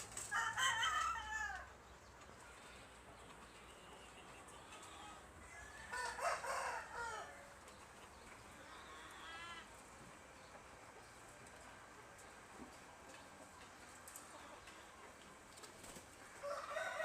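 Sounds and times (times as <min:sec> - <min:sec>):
chicken crowing: 0:00.3 - 0:01.8, 0:05.4 - 0:07.6, 0:16.4 - 0:17.0
chicken clucking: 0:00.3 - 0:17.0.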